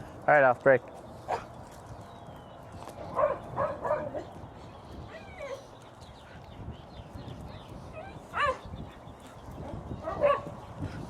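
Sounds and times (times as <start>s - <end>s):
dogs barking: 1.3s - 1.6s, 3.0s - 4.4s, 7.9s - 10.8s
high dog yelps: 7.9s - 8.7s, 10.0s - 10.5s.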